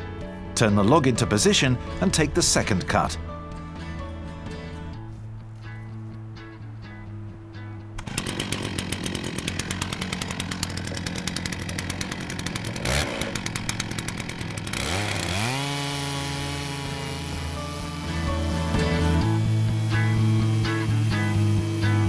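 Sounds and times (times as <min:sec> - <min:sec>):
background music: 0:00.0 - 0:09.1, 0:14.7 - 0:22.0
chainsaw cutting through log: 0:08.0 - 0:22.0.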